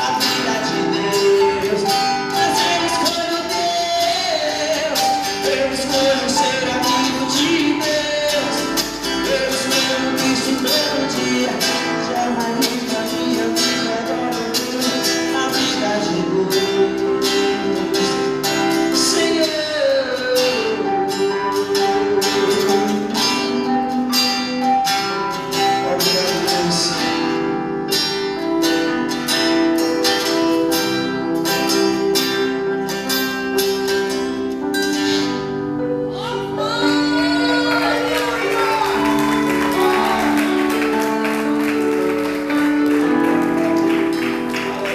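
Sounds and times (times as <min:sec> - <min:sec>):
person singing: 0:00.0 - 0:27.4, 0:36.0 - 0:43.7
gospel band music: 0:00.0 - 0:44.9.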